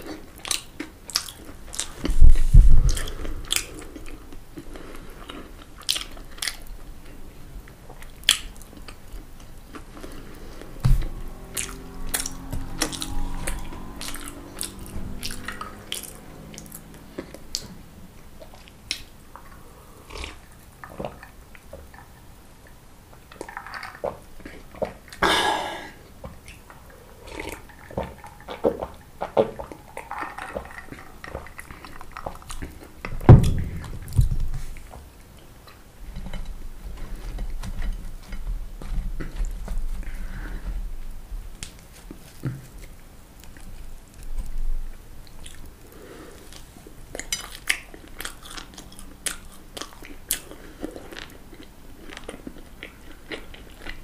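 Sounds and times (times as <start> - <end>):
chewing crunchy fried food: 0.0 - 25.2, 26.0 - 33.2, 34.7 - 54.0
low droning tone: 10.0 - 18.5
loud low thump: 10.8 - 11.4, 33.3 - 34.6.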